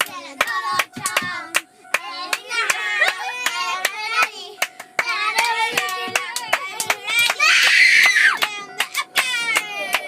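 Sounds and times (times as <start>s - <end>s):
hands clapping in rhythm: 0.0s - 10.0s.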